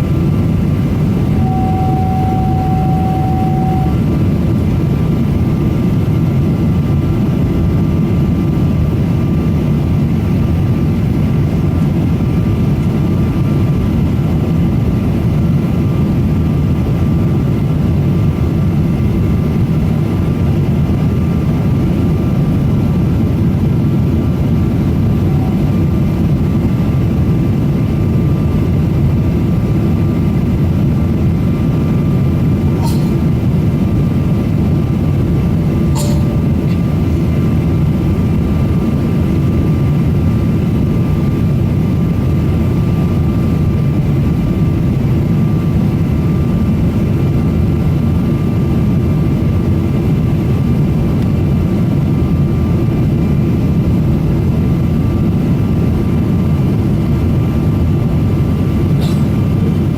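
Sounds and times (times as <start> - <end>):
faint steady whining tones: 0.0 - 5.1, 21.7 - 28.1, 31.5 - 41.8
airliner cabin engine rumble: 0.0 - 59.9
short steady tone: 1.2 - 4.1, 25.2 - 25.8, 35.8 - 37.0.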